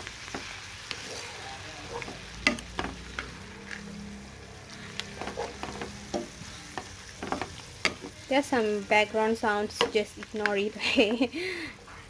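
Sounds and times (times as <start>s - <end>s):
food sizzling in a frying pan: 0.0s - 11.5s
spatula scraping a pan: 0.2s - 8.3s.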